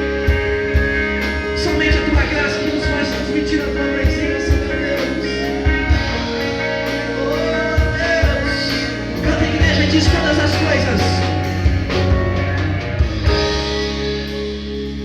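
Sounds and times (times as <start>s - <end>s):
guitar: 0.0s - 15.0s
steady drum beat: 0.0s - 15.0s
worship band music: 0.0s - 15.0s
singing: 1.6s - 11.2s.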